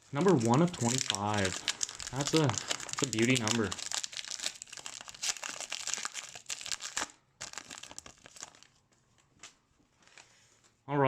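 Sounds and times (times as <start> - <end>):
foil wrapper crinkling and tearing: 0.0 - 8.8.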